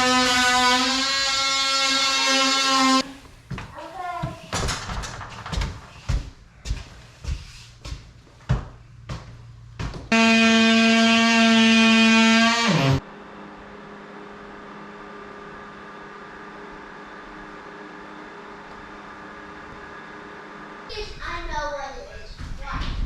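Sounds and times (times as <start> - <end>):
electric power tool running: 0.0 - 3.1, 10.1 - 13.0
steady low hum: 0.0 - 23.0.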